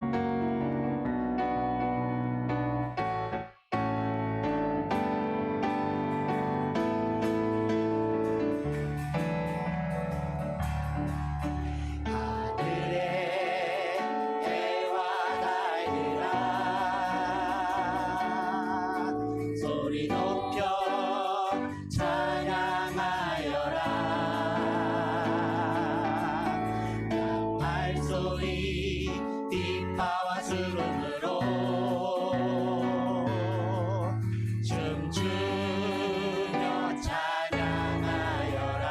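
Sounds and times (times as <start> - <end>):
instrumental accompaniment: 2.6 - 38.9
voices singing worship song: 11.0 - 38.9.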